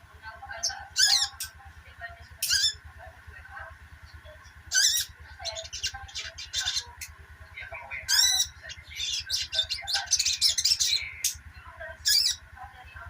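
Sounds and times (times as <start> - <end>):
bird twittering: 0.6 - 1.6, 2.4 - 2.9, 4.1 - 12.5.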